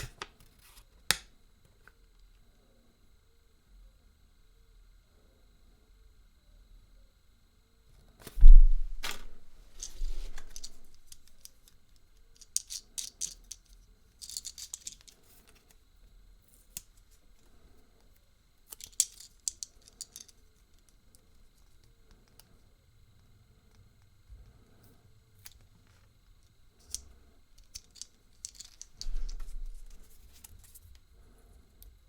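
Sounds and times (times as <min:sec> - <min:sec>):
plastic parts clicking and rattling: 0:08.2 - 0:15.8, 0:18.7 - 0:22.5, 0:26.8 - 0:31.0.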